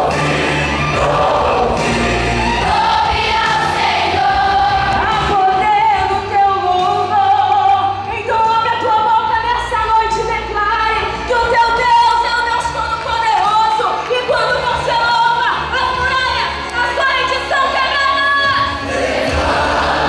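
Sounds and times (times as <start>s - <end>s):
choir singing gospel: 0.0s - 6.1s, 18.4s - 20.0s
instrumental accompaniment: 0.0s - 6.2s.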